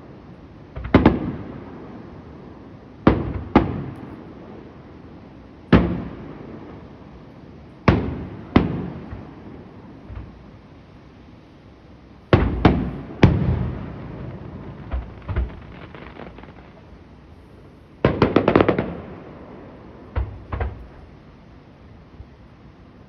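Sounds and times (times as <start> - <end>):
fireworks pops and crackle: 0.7 - 1.6, 3.1 - 4.2, 5.7 - 6.9, 7.8 - 9.4, 10.0 - 10.4, 12.3 - 19.2, 20.1 - 21.2
fireworks bangs: 0.7 - 1.9, 3.0 - 4.3, 5.7 - 7.1, 7.8 - 10.4, 12.2 - 21.2.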